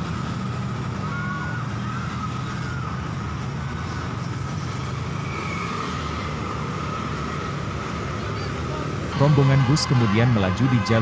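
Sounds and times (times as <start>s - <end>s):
road traffic rumble: 0.0s - 11.0s
musical bus air horns: 9.1s - 11.0s.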